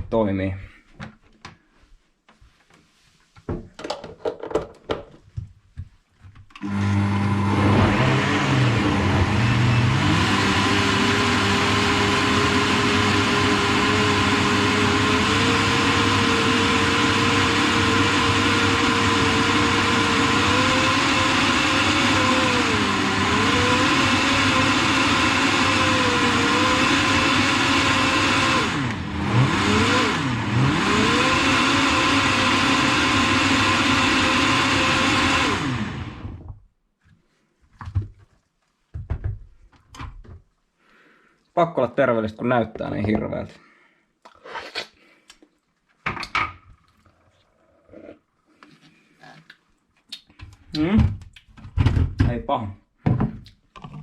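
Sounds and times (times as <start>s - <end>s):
blender motor running: 6.6s - 36.5s.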